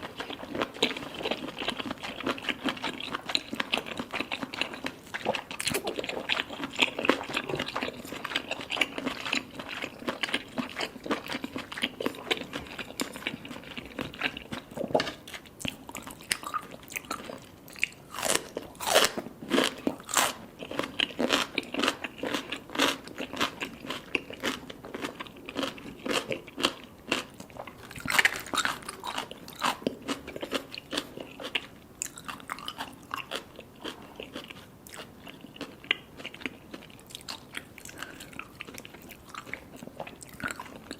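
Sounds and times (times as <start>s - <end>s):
person chewing crunchy food: 0.0s - 40.9s.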